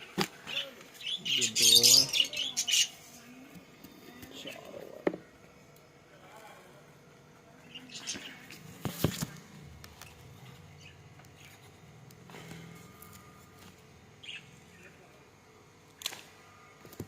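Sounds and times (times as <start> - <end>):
parrots chirping: 0.5 - 3.0, 14.2 - 14.8.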